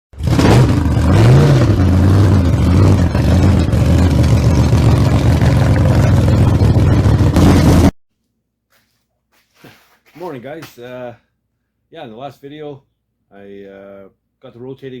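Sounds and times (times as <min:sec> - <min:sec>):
engine idling and revving: 0:00.1 - 0:07.9.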